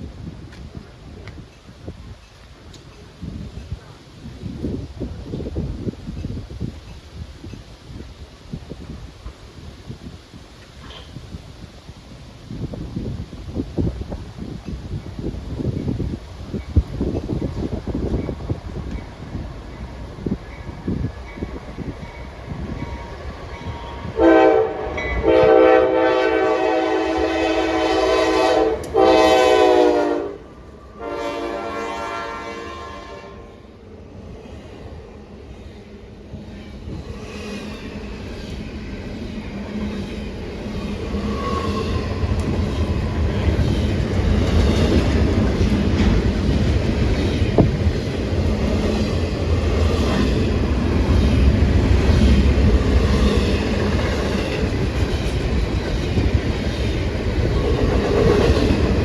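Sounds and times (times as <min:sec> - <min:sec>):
locomotive air horn blasts: 0:23.7 - 0:30.4, 0:31.0 - 0:33.6
train wheels clacking on rails: 0:36.3 - 0:59.0.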